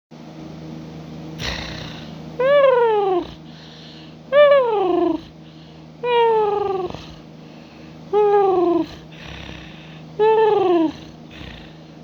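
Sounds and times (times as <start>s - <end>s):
cat purring: 1.4s - 3.7s, 4.3s - 5.4s, 6.0s - 7.3s, 8.2s - 12.0s
cat meowing: 6.0s - 7.1s.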